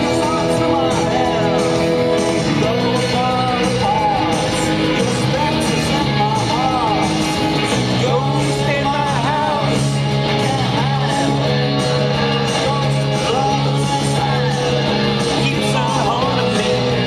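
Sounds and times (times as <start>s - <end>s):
person singing rock song: 0.0s - 17.0s
rock band playing: 0.0s - 17.0s.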